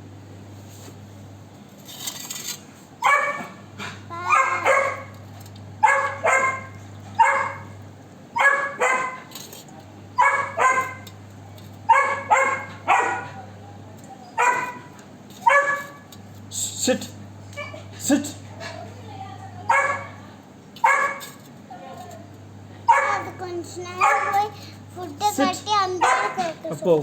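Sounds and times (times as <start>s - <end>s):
puppy barking: 3.0s - 5.2s, 5.8s - 9.3s, 10.2s - 11.1s, 11.8s - 13.5s, 14.3s - 16.1s, 17.6s - 17.9s, 19.7s - 20.2s, 20.8s - 21.4s, 22.8s - 24.6s, 25.3s - 26.6s.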